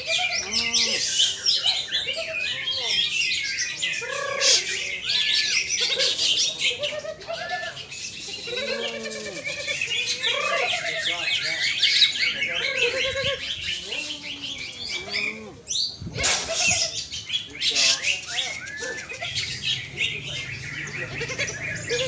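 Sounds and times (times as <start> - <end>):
songbirds chirping and trilling: 0.0 - 22.0
low voice-like sounds: 12.8 - 16.6.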